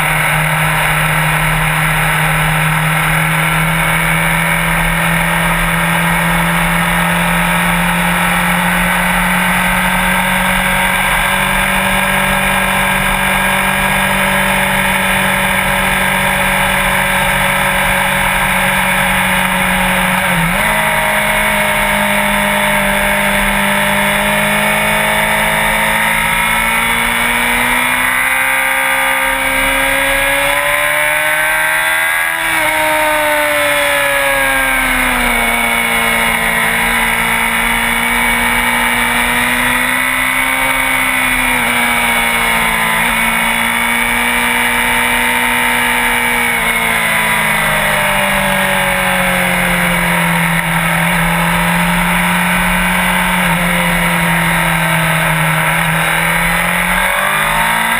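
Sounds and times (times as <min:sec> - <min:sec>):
motorcycle engine revving: 0:00.0 - 0:57.9.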